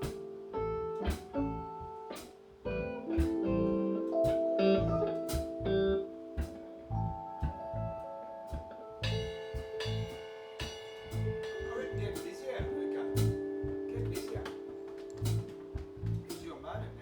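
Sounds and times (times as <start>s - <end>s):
plucked guitar notes: 0.0s - 17.0s
steady drum beat: 8.5s - 17.0s.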